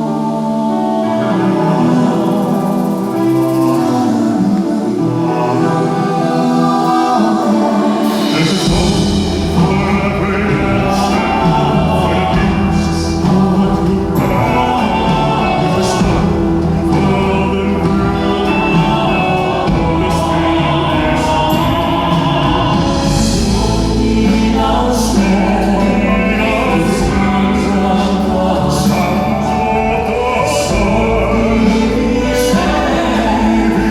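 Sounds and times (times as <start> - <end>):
band accompaniment: 0.0 - 33.9
male vocal quartet singing: 0.0 - 33.9
deep bass line: 8.4 - 33.9.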